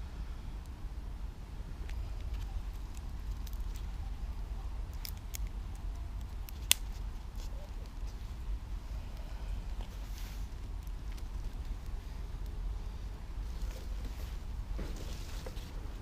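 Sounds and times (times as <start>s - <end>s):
steady low rumble: 0.0s - 16.0s
sharp crack: 4.9s - 7.0s
small clicks and snaps: 4.9s - 8.1s.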